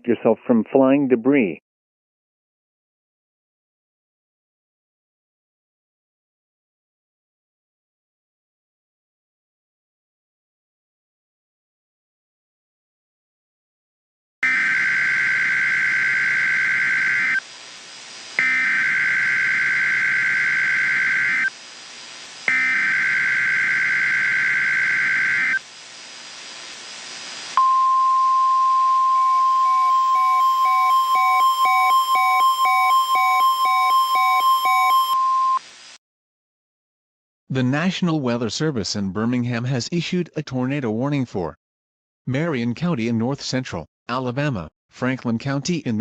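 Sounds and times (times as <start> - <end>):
high steady alert tone: 27.6 - 35.6.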